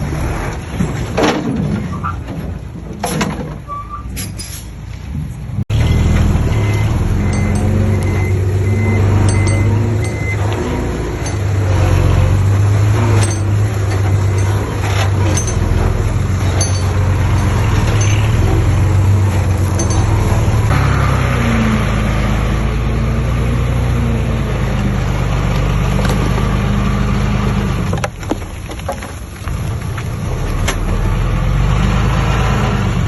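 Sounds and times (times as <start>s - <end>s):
heavy machinery diesel engine: 5.2s - 33.0s
reversing alarm beeping: 5.8s - 10.5s
metallic clinks: 7.2s - 8.2s, 9.2s - 10.4s, 11.1s - 11.6s, 13.1s - 20.7s.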